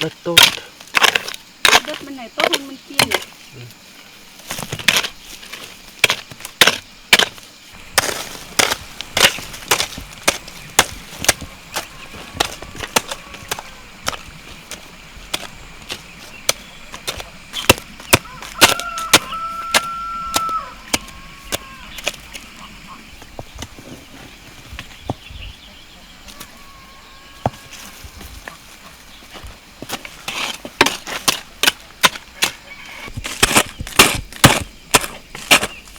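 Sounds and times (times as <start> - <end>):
sharp chopping knocks: 33.3 - 35.7.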